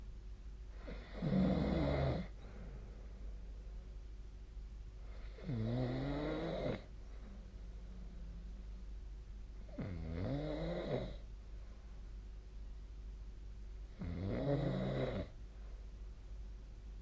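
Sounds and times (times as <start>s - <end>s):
person snoring: 0.8s - 2.3s, 5.1s - 6.9s, 9.7s - 11.2s, 14.0s - 15.4s.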